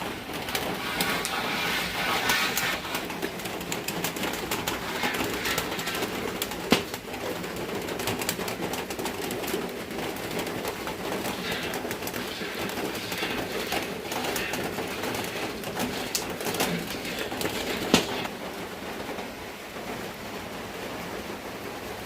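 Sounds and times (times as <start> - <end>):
food sizzling on wood fire: 0.0 - 19.3
doves cooing: 10.6 - 18.4.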